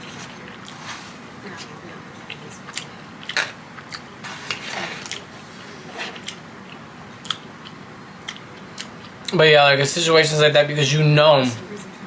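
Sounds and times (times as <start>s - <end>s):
chewing and biting food: 6.1s - 9.3s
mouth clicks and crunches: 6.1s - 9.4s.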